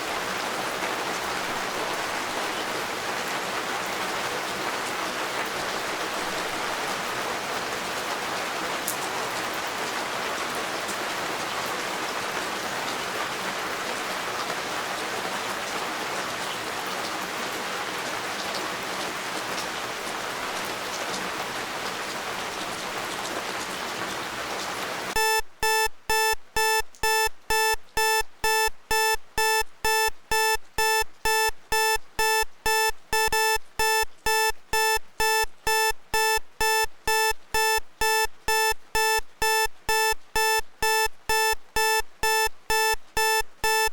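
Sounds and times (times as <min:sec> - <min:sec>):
steady rain falling: 0:00.0 - 0:25.2
electronic alarm beeping: 0:25.2 - 0:43.9.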